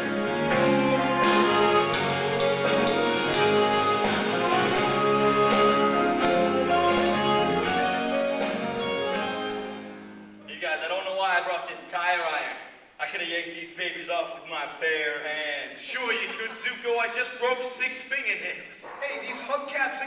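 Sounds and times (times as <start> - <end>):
instrumental music: 0.0 - 10.5.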